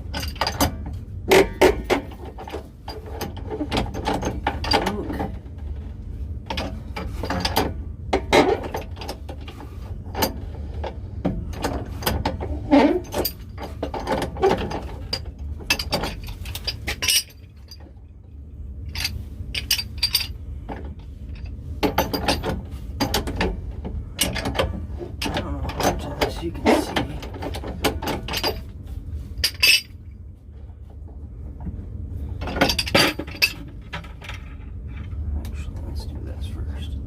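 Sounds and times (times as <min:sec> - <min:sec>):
hand tools clanking on metal fittings: 0:00.0 - 0:05.5, 0:06.5 - 0:17.9, 0:18.9 - 0:28.7, 0:29.4 - 0:30.0, 0:32.3 - 0:35.6
steady low hum: 0:00.0 - 0:37.0.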